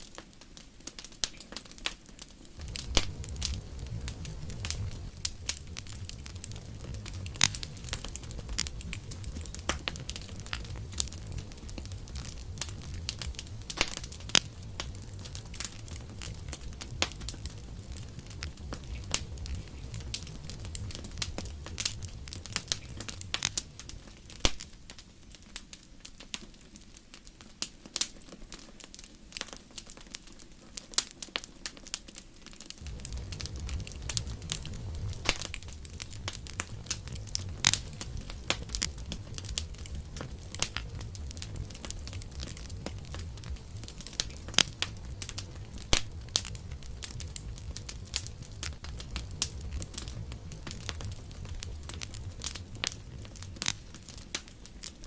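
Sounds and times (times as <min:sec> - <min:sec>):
campfire crackling and popping: 0:00.0 - 0:55.0
low rumble: 0:02.6 - 0:24.4, 0:32.8 - 0:53.8.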